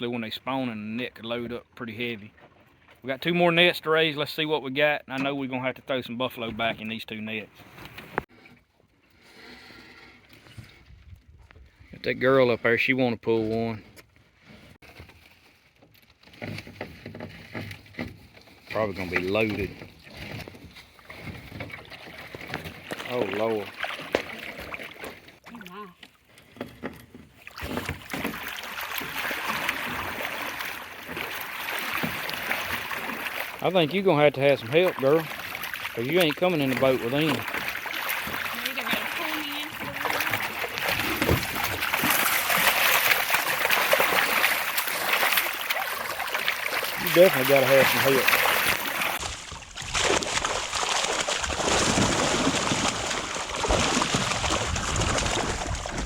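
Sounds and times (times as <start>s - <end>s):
water splashing and churning: 9.2s - 56.0s
fish slapping water: 17.2s - 25.5s, 27.3s - 56.0s.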